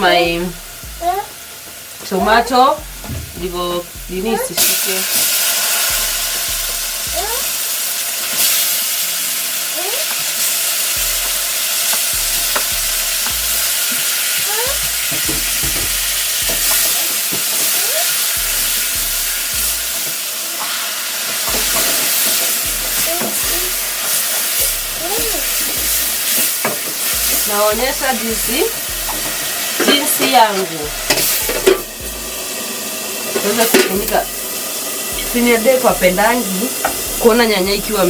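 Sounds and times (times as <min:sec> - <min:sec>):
vegetables sizzling in oil: 0:00.0 - 0:38.0
pan being stirred: 0:11.0 - 0:38.0.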